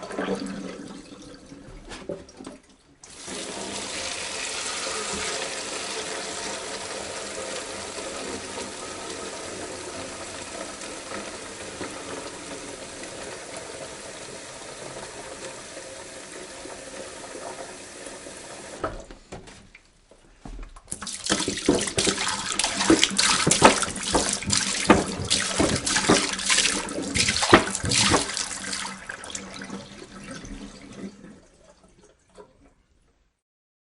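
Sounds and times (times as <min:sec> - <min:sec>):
water splashing: 0:20.8 - 0:32.6
water pouring from a jug: 0:20.9 - 0:32.8.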